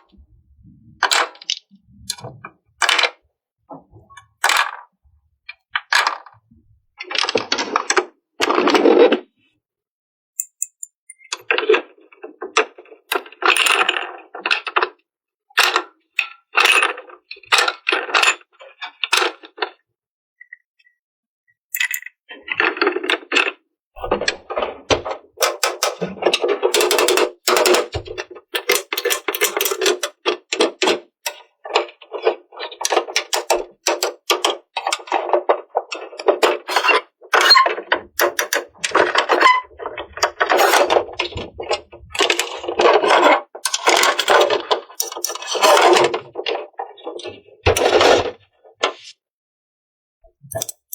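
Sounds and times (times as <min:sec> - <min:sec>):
plastic toy pieces clicking: 0:21.7 - 0:22.1, 0:25.4 - 0:28.0, 0:28.6 - 0:46.2, 0:50.5 - 0:50.9.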